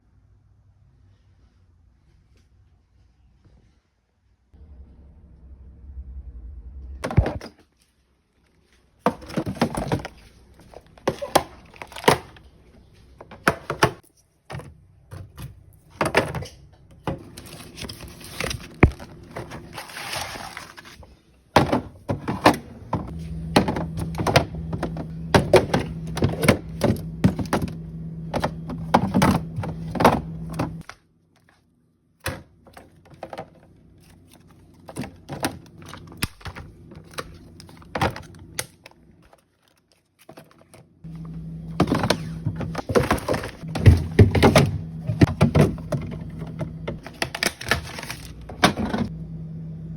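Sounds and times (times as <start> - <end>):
steady low hum: 41.0 - 47.1, 47.9 - 49.9.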